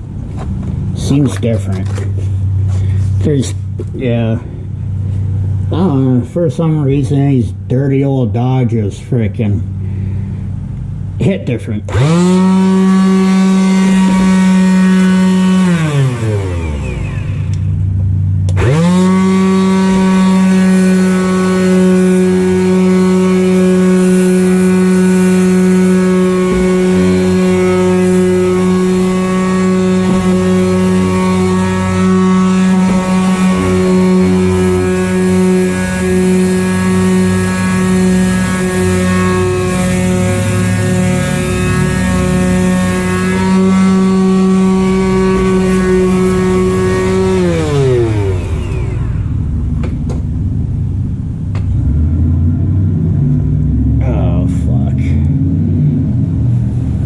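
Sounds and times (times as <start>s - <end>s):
power sander whining: 11.9s - 53.9s.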